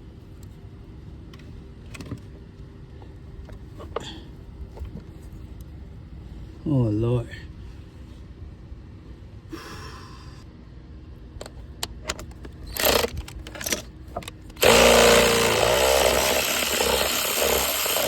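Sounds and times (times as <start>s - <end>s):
power tool running: 12.7s - 13.8s, 14.6s - 18.0s.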